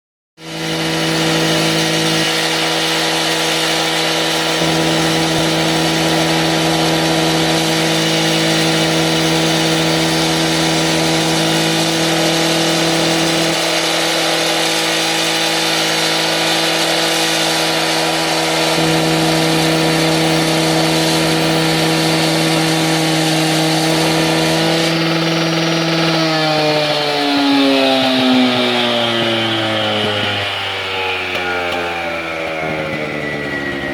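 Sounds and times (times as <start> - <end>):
power saw running: 0.4 - 33.9.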